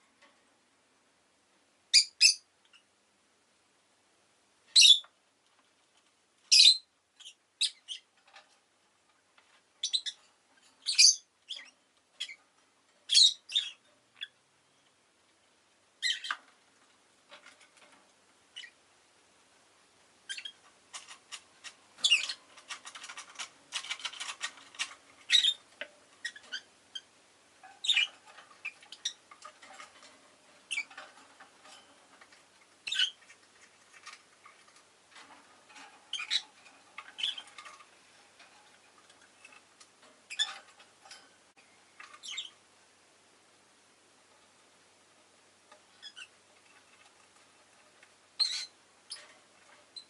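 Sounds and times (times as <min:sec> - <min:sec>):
lovebird chirping and squawking: 0:01.9 - 0:02.9, 0:04.7 - 0:05.1, 0:06.5 - 0:08.1, 0:09.8 - 0:10.2, 0:10.8 - 0:12.4, 0:13.0 - 0:14.4, 0:16.0 - 0:16.4, 0:18.6 - 0:18.8, 0:20.3 - 0:21.1, 0:22.0 - 0:27.1, 0:27.8 - 0:29.8, 0:30.6 - 0:31.0, 0:32.8 - 0:34.2, 0:36.1 - 0:37.7, 0:40.3 - 0:40.6, 0:42.1 - 0:42.6, 0:46.0 - 0:46.4, 0:48.4 - 0:49.2.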